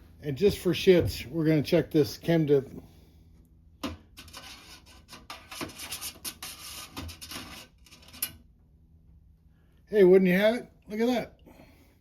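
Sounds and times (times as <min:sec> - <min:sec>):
small metal parts scraping: 0:04.2 - 0:08.4.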